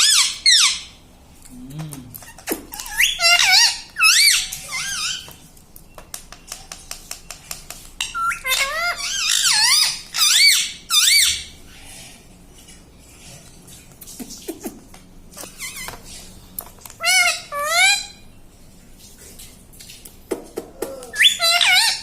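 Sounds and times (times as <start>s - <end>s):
parrot squeaky warbling calls: 0.0s - 1.0s, 2.3s - 5.3s, 8.0s - 11.6s, 17.0s - 18.2s, 21.0s - 22.0s.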